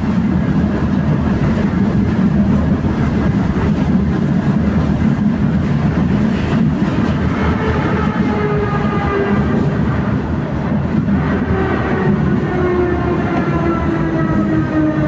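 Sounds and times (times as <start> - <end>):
tram wheels rumbling: 0.0 - 15.0.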